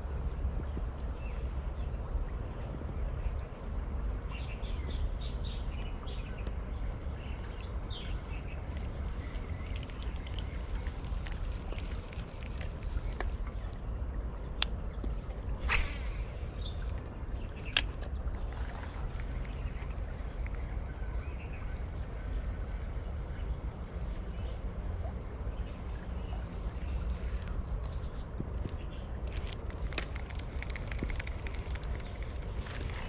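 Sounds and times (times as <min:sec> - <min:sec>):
crickets trilling: 0:00.0 - 0:33.0
brief rustle: 0:14.6 - 0:19.6
sharp clicks: 0:28.7 - 0:33.0.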